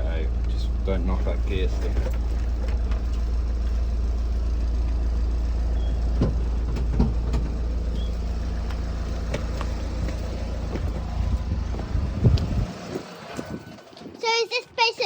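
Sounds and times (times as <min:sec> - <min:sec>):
van engine idling: 0:00.0 - 0:14.4
knocks and bumps: 0:05.8 - 0:13.6.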